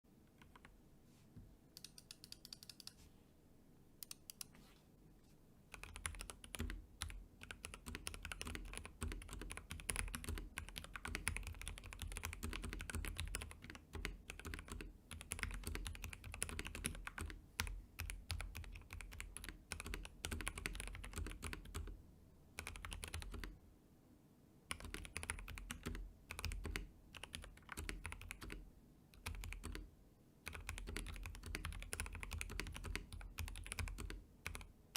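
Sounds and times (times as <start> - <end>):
mechanical keyboard typing: 0.3 - 0.7, 1.8 - 3.0, 5.7 - 21.9, 22.6 - 23.6, 24.7 - 28.6, 29.2 - 34.7.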